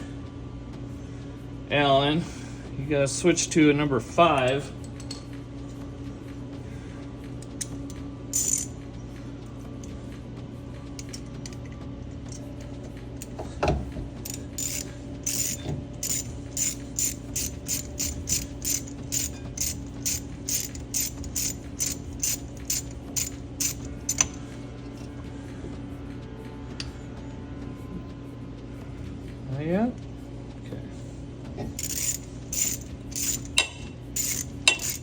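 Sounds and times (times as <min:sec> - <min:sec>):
low hum: 0:00.0 - 0:35.0
hand ratchet clicking: 0:07.4 - 0:08.7, 0:14.2 - 0:24.4, 0:31.8 - 0:35.0.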